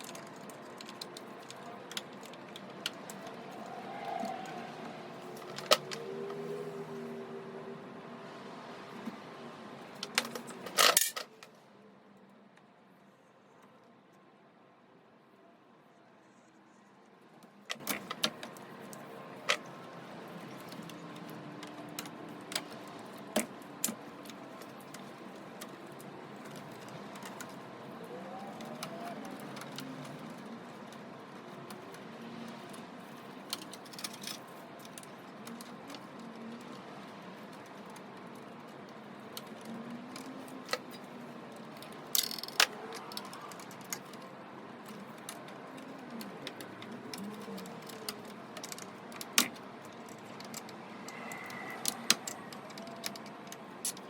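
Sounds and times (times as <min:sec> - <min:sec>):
tools clicking and clinking: 0:09.9 - 0:11.5, 0:28.3 - 0:36.8, 0:37.4 - 0:54.0.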